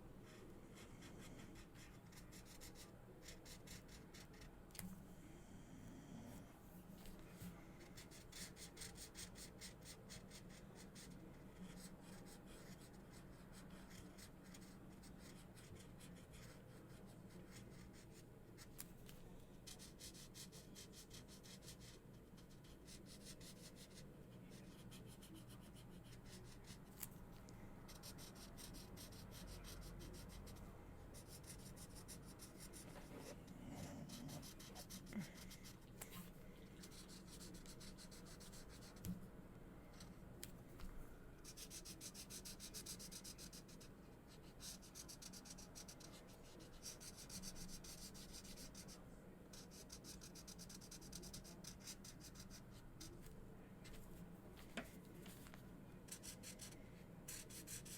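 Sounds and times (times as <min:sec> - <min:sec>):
marker scratching on paper: 0:07.8 - 0:18.8, 0:19.7 - 0:26.9, 0:27.9 - 0:30.5, 0:31.1 - 0:39.1, 0:41.4 - 0:53.2, 0:56.1 - 0:57.9.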